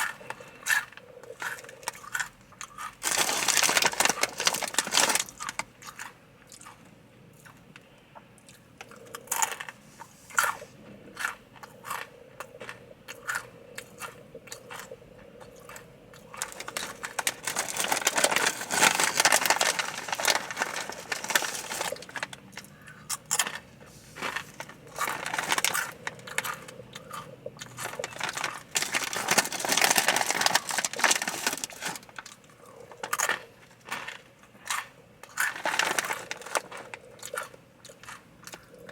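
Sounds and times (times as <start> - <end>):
tortilla chips crunching: 0.0 - 6.8, 15.6 - 38.9.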